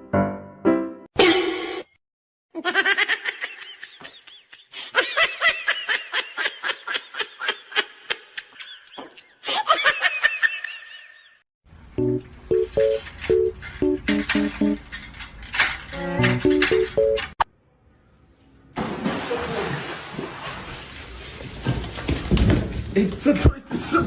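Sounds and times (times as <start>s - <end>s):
music: 0.0s - 1.1s, 12.0s - 14.8s, 15.9s - 17.4s
person laughing high-pitched: 2.6s - 11.3s.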